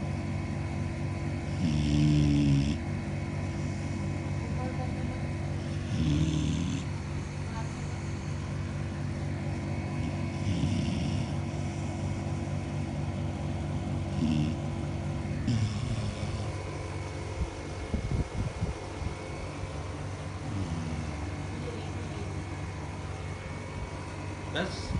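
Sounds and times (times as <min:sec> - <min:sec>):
steady background hum: 0:00.0 - 0:24.9
dog snoring: 0:01.3 - 0:04.2, 0:05.5 - 0:08.6, 0:09.6 - 0:12.9, 0:13.8 - 0:17.2, 0:20.4 - 0:21.8.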